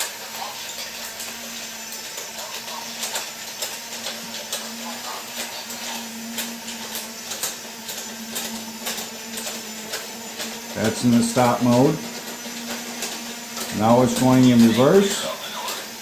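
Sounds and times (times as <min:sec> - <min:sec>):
toy train clicks and rattles: 0:00.0 - 0:16.0
toy train motor hum: 0:00.0 - 0:16.0.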